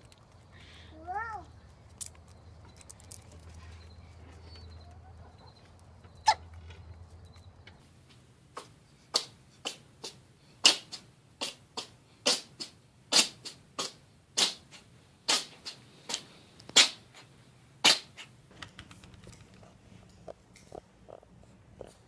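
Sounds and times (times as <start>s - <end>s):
small animal sneezing: 8.6s - 18.4s.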